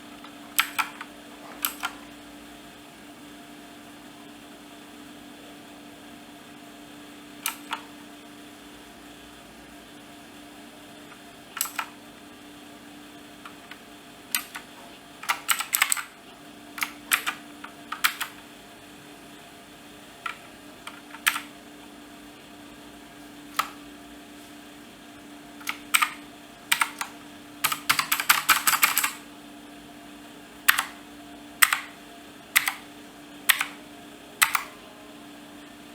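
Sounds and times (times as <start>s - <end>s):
clicky mechanical keyboard typing: 0.2s - 2.1s, 7.4s - 7.9s, 11.1s - 12.0s, 13.4s - 16.2s, 16.8s - 18.5s, 20.2s - 21.5s, 23.5s - 23.8s, 25.6s - 29.3s, 30.7s - 31.0s, 31.6s - 32.9s, 33.5s - 33.8s, 34.4s - 34.8s.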